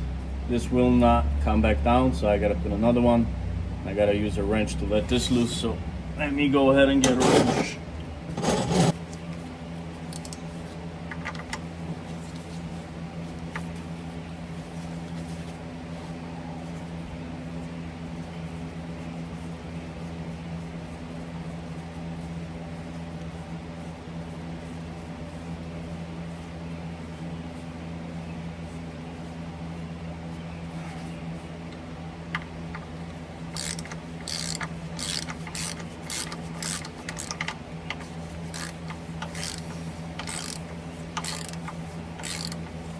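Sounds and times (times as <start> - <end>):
low hum with tones: 0.0 - 42.9
wrench clicking: 10.1 - 10.4, 33.5 - 42.7.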